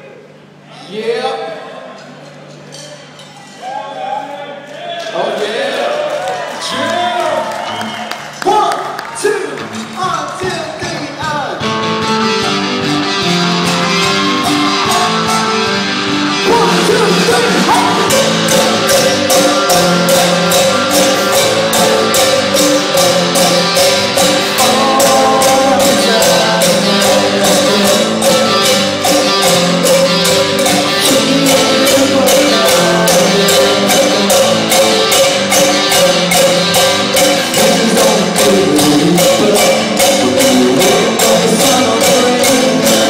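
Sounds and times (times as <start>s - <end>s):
high percussion strikes: 9.8s - 43.0s
live rock band playing: 11.5s - 43.0s
electric guitar: 11.6s - 43.0s.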